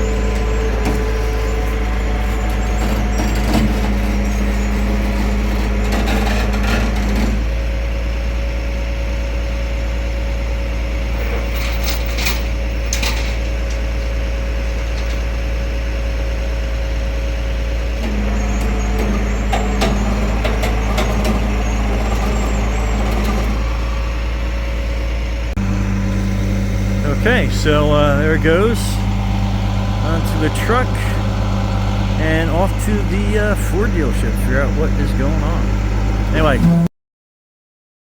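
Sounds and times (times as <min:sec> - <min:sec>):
truck engine running: 0:00.0 - 0:36.9
steady whine: 0:18.0 - 0:36.9.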